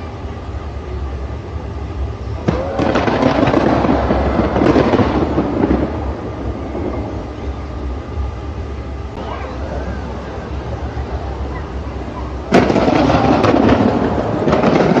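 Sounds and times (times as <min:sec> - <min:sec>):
low rumble: 0:00.0 - 0:15.0
fireworks crackling: 0:02.1 - 0:08.0, 0:09.1 - 0:15.0
firework bang: 0:02.4 - 0:07.2, 0:12.5 - 0:15.0.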